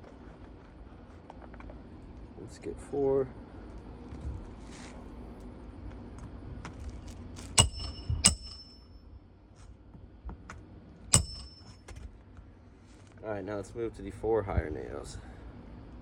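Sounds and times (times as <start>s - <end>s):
slide-hammer metallic clank: 7.6s - 8.9s, 11.1s - 11.8s.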